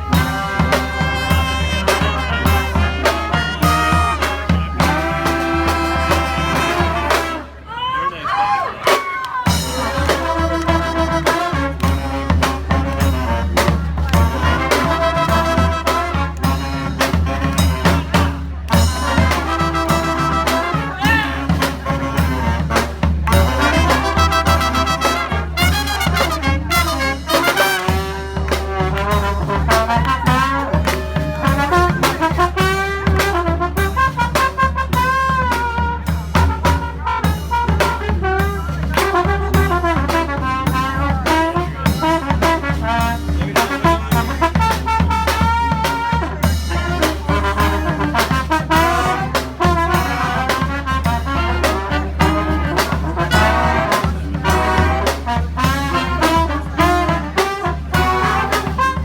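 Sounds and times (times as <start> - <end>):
trumpets and trombones melody: 0.0 - 7.7, 9.5 - 59.0
drum hits: 9.5 - 36.9.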